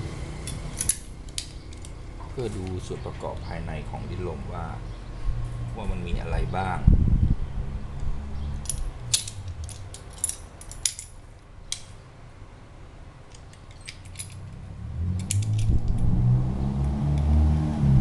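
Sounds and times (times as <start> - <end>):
metallic clicks of wrench and parts: 0.5 - 2.0, 8.6 - 12.0, 13.3 - 14.6, 15.2 - 16.1
low drone: 14.8 - 18.0.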